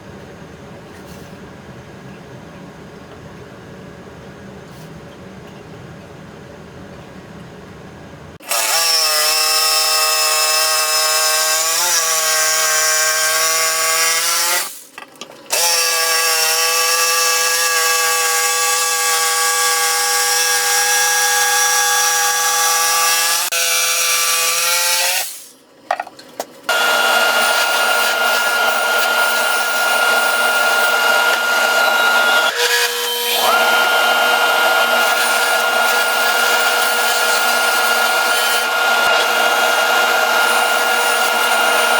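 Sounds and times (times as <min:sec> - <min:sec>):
noisy power tool high whine: 0:26.7 - 0:41.9
power tool humming whine: 0:26.7 - 0:41.9.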